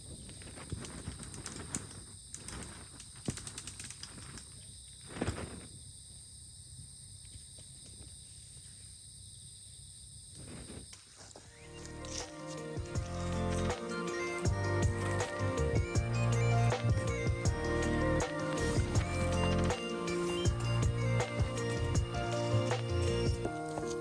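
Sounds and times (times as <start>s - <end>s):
insects trilling: 0.0s - 24.0s.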